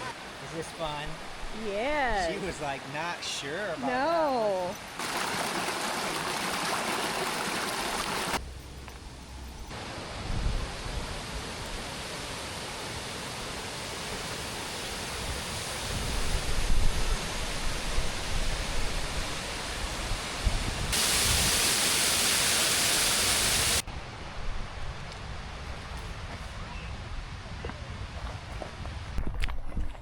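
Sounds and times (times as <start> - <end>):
hissy rush of water: 0.0 - 8.4, 9.7 - 23.9
waterfall rushing: 5.0 - 8.4, 9.8 - 23.8.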